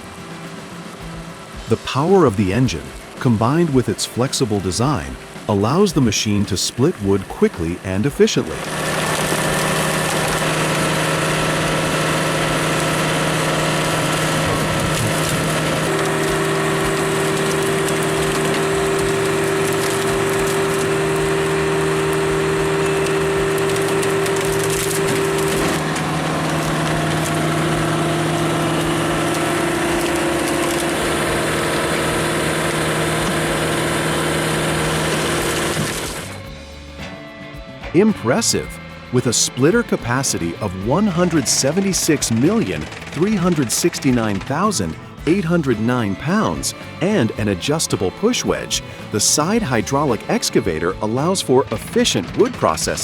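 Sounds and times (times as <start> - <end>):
engine and pump drone: 0.0 - 53.0
wood cracking and splintering: 23.0 - 33.4.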